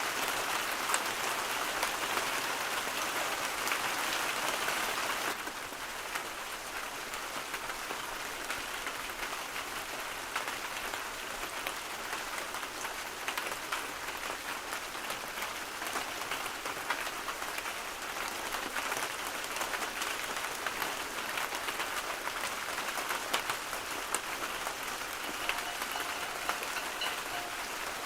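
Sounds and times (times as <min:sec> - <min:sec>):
steady rain patter: 0:00.0 - 0:28.0
faint steady tones: 0:25.1 - 0:28.0.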